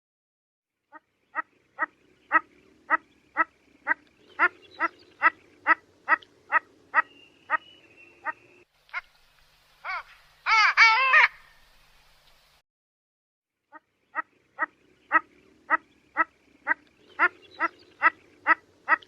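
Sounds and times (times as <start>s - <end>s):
duck quacking: 0.9s - 9.1s, 13.7s - 19.0s.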